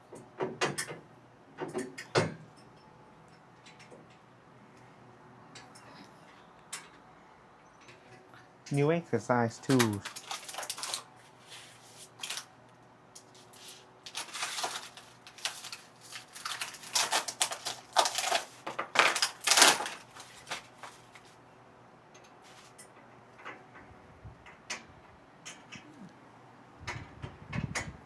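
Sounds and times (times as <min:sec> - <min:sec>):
clicking and clattering of tools: 0:01.6 - 0:04.2, 0:09.6 - 0:11.1, 0:13.2 - 0:21.3.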